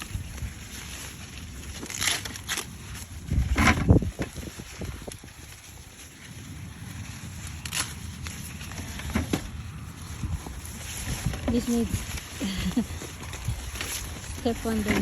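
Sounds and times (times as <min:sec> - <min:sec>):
sharp cracks of stalks: 0:00.0 - 0:05.7, 0:07.1 - 0:09.6
corn stalks and leaves rustling: 0:00.0 - 0:15.0.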